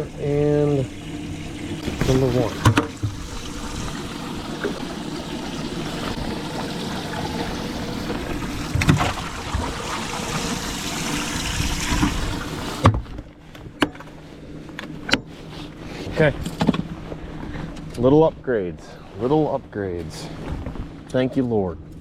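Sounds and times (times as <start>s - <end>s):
water rushing and trickling: 0.0s - 13.2s.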